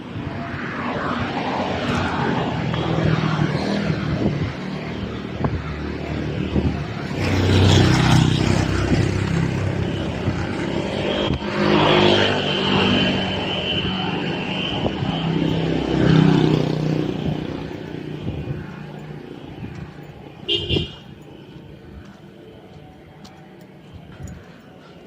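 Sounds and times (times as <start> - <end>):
vehicle engines passing: 0.0 - 25.0.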